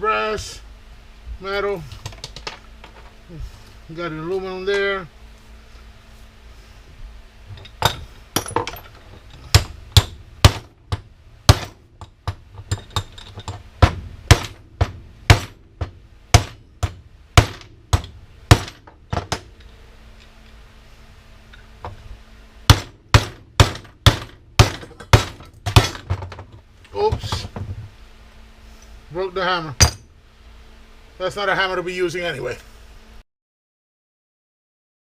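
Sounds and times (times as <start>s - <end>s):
hammer blows on metal parts: 7.6s - 19.6s.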